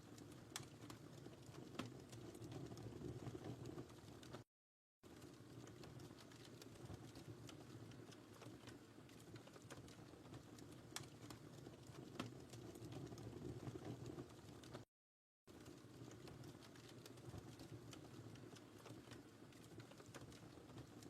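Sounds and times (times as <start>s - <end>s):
fire pops and snaps: 0.0s - 4.4s, 5.1s - 14.8s, 15.5s - 21.0s
wood fire crackling: 0.0s - 14.8s, 15.5s - 21.0s.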